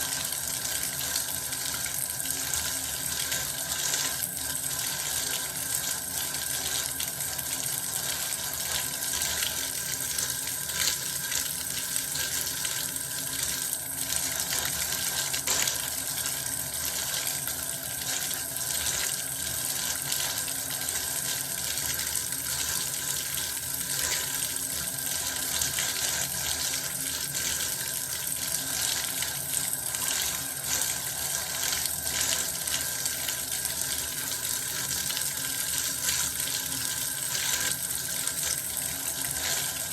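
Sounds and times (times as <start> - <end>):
bath water pouring and splashing: 0.4 - 39.9.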